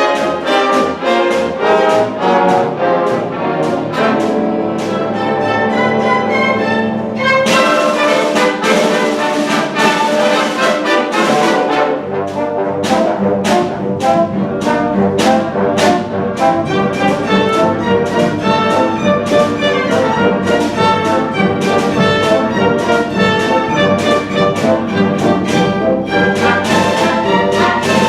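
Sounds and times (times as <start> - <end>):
orchestra brass passage: 0.0 - 28.0.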